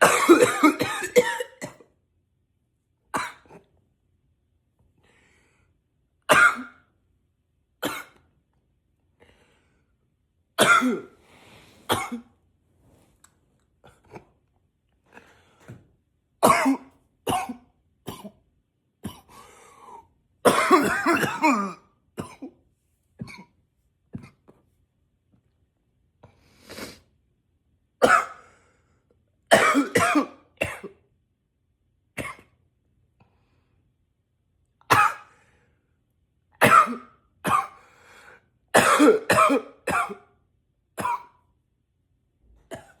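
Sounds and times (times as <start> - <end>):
man coughing: 0.0 - 1.8, 10.6 - 11.1, 16.4 - 18.3, 20.4 - 22.5, 29.5 - 30.9, 34.9 - 35.3, 36.6 - 37.8, 38.8 - 40.2.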